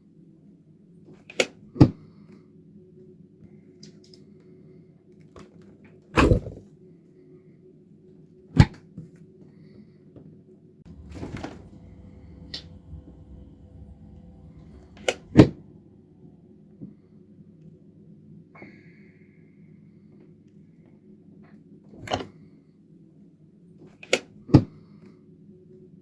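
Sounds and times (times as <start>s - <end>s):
refrigerator door opening: 10.9s - 15.7s
steady low hum: 10.9s - 17.7s.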